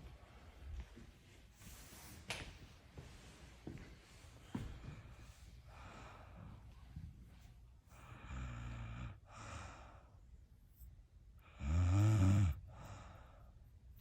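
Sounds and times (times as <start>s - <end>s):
soft breath: 3.0s - 11.6s, 12.6s - 14.0s
person snoring: 8.1s - 9.9s, 11.4s - 12.9s.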